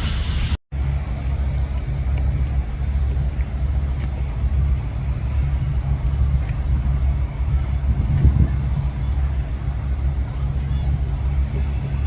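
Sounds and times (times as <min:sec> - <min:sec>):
car engine rumble: 0:00.0 - 0:12.0
road noise: 0:00.0 - 0:12.0.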